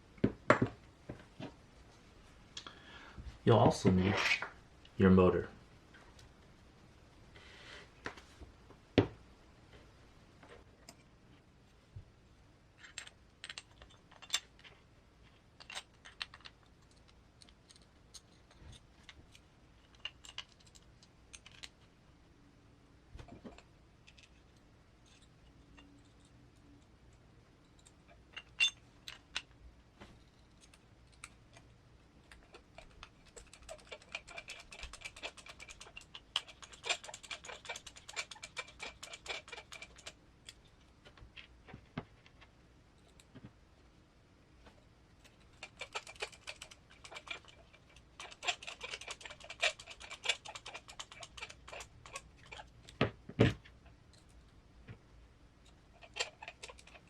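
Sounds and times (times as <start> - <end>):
small parts and tools clicking: 12.8 - 21.9, 23.2 - 29.6, 30.2 - 41.6, 44.8 - 53.0, 55.6 - 57.0.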